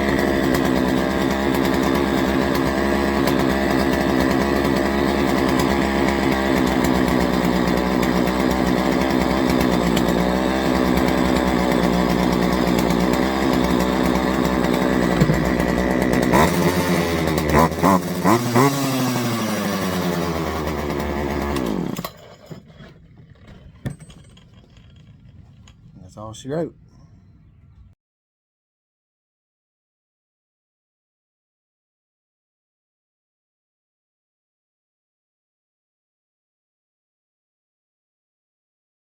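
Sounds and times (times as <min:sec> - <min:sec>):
chainsaw engine revving: 0:00.0 - 0:25.5
chainsaw engine idling: 0:00.0 - 0:26.4.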